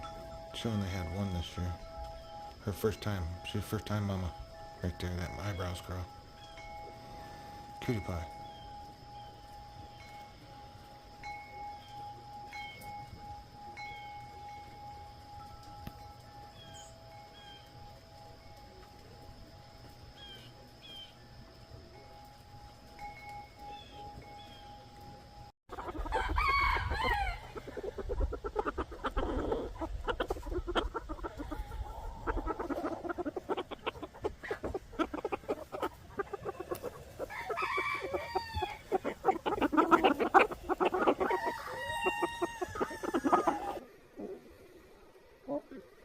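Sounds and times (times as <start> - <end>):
chickens clucking: 0.0 - 46.0
rooster crowing: 25.8 - 27.8, 36.8 - 43.8.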